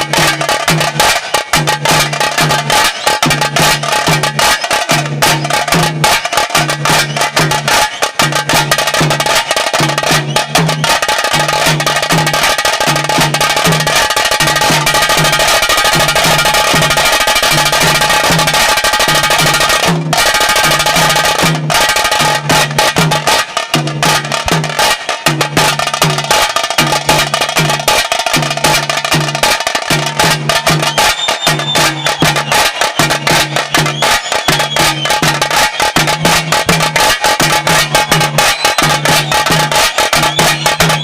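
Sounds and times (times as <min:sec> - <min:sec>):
low drum pattern: 0:00.0 - 0:41.0
rapid drum roll with sticks: 0:00.0 - 0:41.0.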